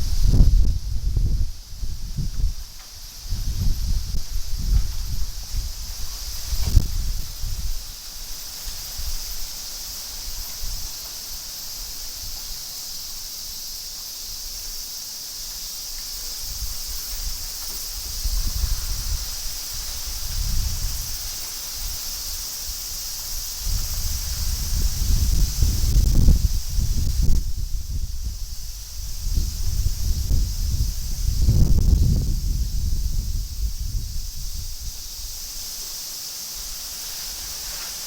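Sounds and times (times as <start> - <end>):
wind buffeting microphone: 0.0 - 8.0, 16.4 - 35.7
steady high-pitched hiss: 0.0 - 38.0
strong wind gusting through trees: 0.0 - 38.0
leaves rustling: 14.6 - 38.0.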